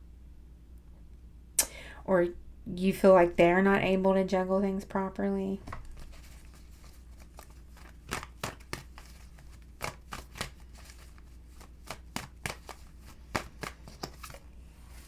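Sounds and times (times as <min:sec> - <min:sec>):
faint low hum: 0:00.0 - 0:15.0
cards being shuffled: 0:05.6 - 0:15.0.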